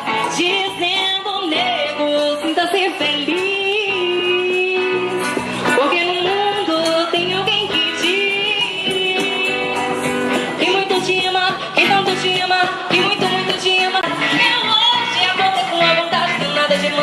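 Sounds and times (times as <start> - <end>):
song with singing over a band: 0.0 - 17.0.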